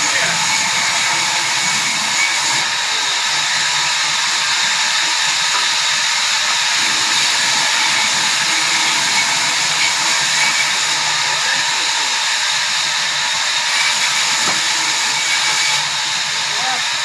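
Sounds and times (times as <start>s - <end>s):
sawmill saw running: 0.0s - 17.0s.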